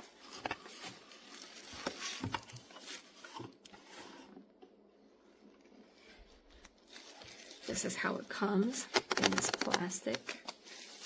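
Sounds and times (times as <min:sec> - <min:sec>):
packaging knocks and rustles: 0:08.8 - 0:10.7.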